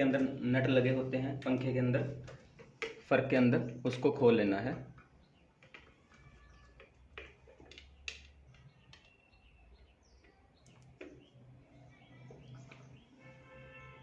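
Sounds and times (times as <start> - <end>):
faint clicks and knocks: 4.9 - 9.2
faint bird chirps: 8.4 - 13.9.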